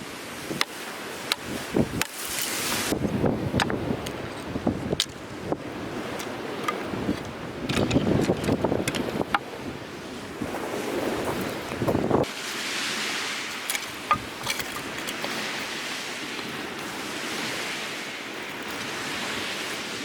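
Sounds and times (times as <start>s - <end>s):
wind rumble on microphone: 1.4s - 12.4s
strong wind rushing: 2.7s - 12.3s.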